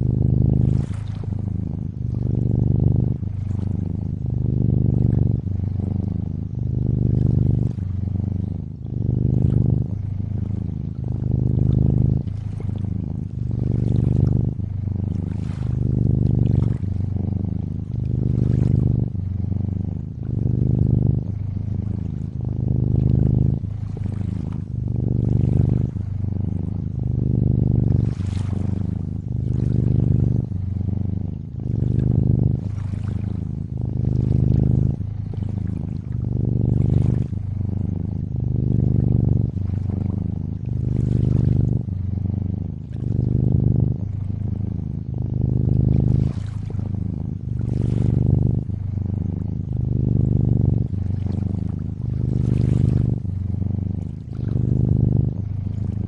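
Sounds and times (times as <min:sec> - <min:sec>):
water lapping and trickling: 0:00.0 - 0:02.2, 0:03.1 - 0:04.5, 0:10.3 - 0:19.2, 0:22.0 - 0:27.1, 0:27.9 - 0:30.5, 0:31.3 - 0:37.4, 0:39.5 - 0:41.8, 0:42.8 - 0:43.3, 0:45.7 - 0:46.9, 0:47.6 - 0:48.3, 0:51.0 - 0:53.2, 0:54.0 - 0:54.8
cat purring: 0:00.0 - 0:56.0.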